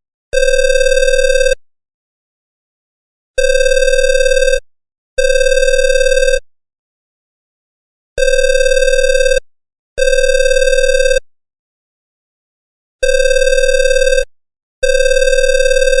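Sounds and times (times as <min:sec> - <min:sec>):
telephone ringing: 0:00.3 - 0:01.6, 0:03.4 - 0:04.5, 0:05.2 - 0:06.4, 0:08.2 - 0:09.2, 0:13.0 - 0:14.2, 0:14.8 - 0:16.0.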